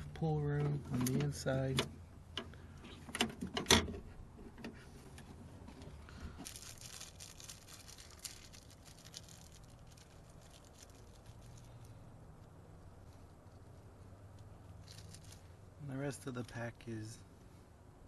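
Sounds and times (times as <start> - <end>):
faint rustling: 4.0 - 15.7.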